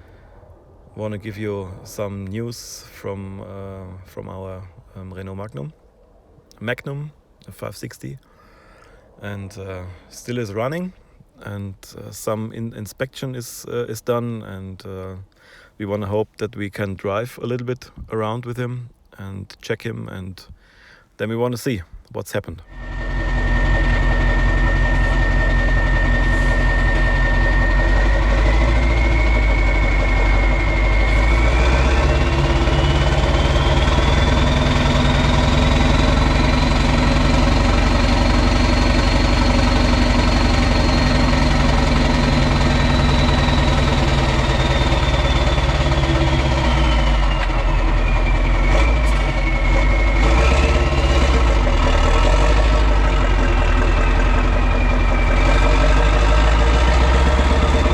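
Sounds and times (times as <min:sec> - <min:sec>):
turbocharger whistle: 0:22.6 - 0:57.9
diesel engine running loud: 0:22.7 - 0:57.9.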